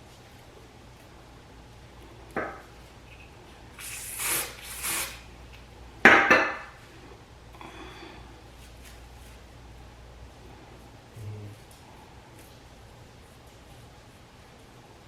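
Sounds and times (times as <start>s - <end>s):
short spray hisses: 3.8s - 5.3s.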